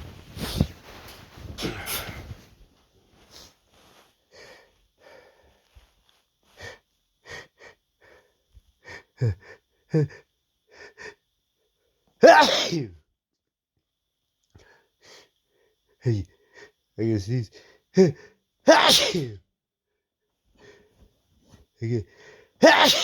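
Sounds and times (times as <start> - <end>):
man sneezing: 1.6 - 2.4, 12.2 - 13.0, 18.0 - 19.4, 21.8 - 23.0.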